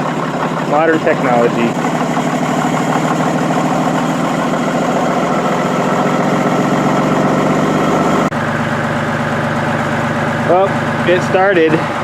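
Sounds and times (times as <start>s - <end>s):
diesel engine idling: 0.0s - 12.0s.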